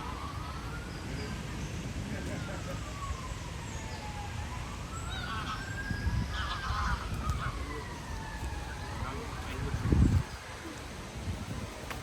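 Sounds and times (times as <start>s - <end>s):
siren wailing: 2.3s - 10.3s.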